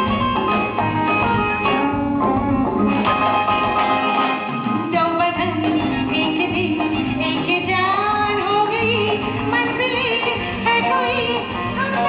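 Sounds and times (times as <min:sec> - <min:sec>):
live band playing: 0:00.0 - 0:12.0
woman singing: 0:04.8 - 0:12.0.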